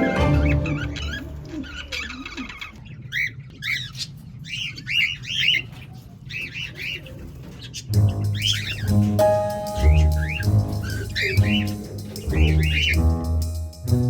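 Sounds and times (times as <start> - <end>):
bird chick peeping: 0.7 - 13.0
guitar and bass music: 7.9 - 14.0.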